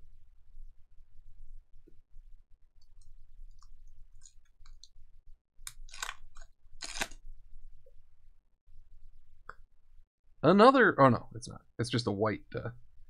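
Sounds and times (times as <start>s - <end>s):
foil wrapper crinkling and tearing: 5.7s - 7.2s.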